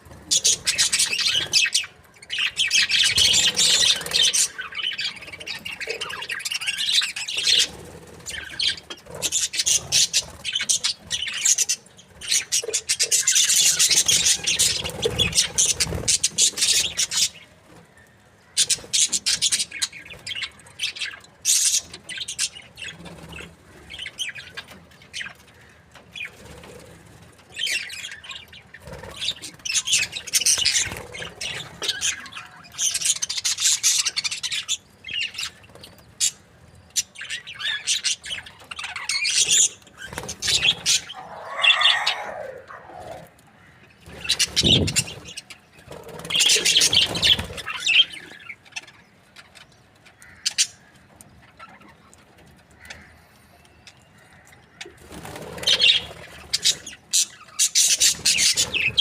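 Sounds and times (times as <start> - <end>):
low warbling bird call: 40.4 - 43.4
budgerigars chirping: 55.0 - 59.0.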